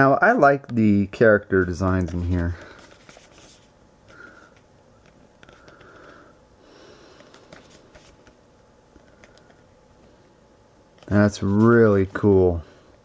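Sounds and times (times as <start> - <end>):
paper pages rustling: 1.6 - 3.7, 7.3 - 8.3, 11.0 - 12.4.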